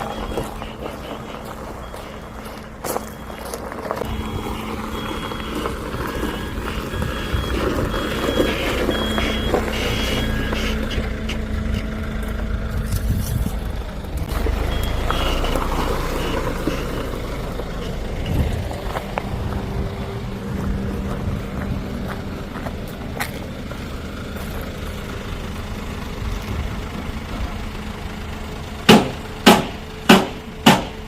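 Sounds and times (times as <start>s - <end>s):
reversing alarm beeping: 0.0s - 11.9s, 14.3s - 17.6s
truck engine running: 0.0s - 31.0s.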